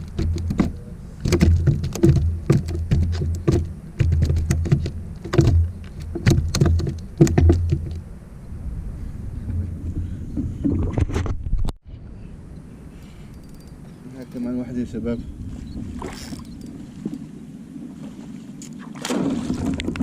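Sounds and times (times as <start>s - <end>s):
clicks and knocks on kayak: 0.0s - 8.0s
low thumps: 0.0s - 8.0s.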